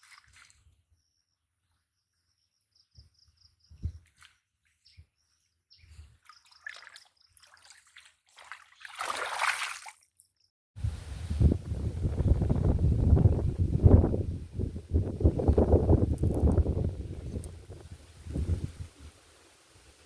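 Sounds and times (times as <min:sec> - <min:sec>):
water splashing and dripping: 0:00.0 - 0:00.6, 0:06.2 - 0:10.3.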